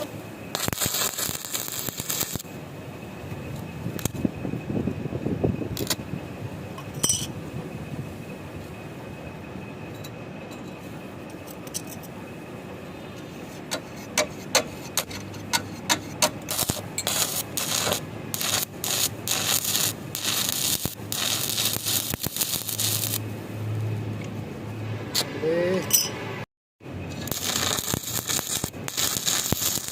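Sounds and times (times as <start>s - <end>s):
welding arc crackle: 0.0s - 2.5s, 4.0s - 4.2s, 5.8s - 6.0s, 16.4s - 23.3s, 27.1s - 29.9s
low electrical hum: 0.0s - 25.0s, 26.8s - 29.9s.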